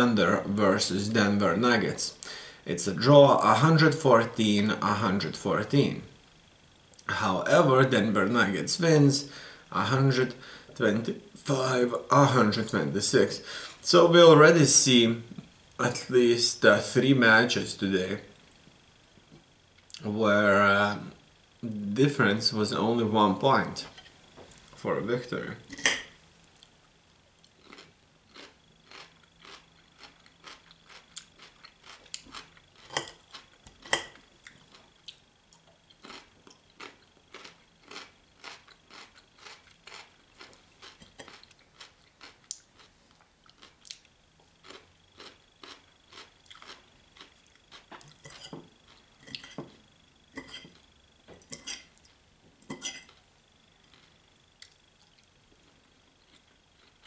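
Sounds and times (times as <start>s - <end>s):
person chewing food: 27.4s - 49.6s, 53.8s - 55.3s, 56.2s - 57.0s.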